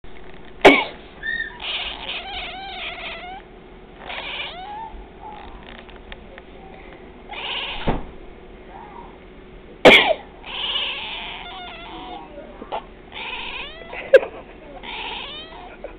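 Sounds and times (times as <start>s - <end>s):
cat meowing: 1.2s - 3.4s, 4.0s - 5.7s, 7.3s - 8.0s, 10.4s - 12.4s, 13.1s - 14.1s, 14.8s - 15.8s.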